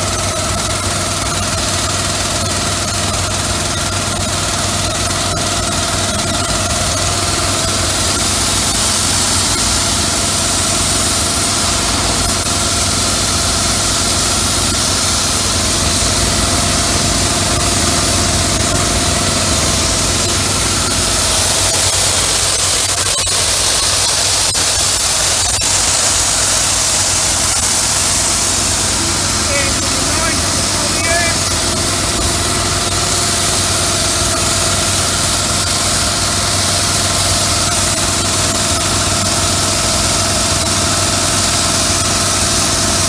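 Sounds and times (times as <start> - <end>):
pressure washer engine running: 0.0 - 43.0
pressure washer hiss: 0.0 - 43.0.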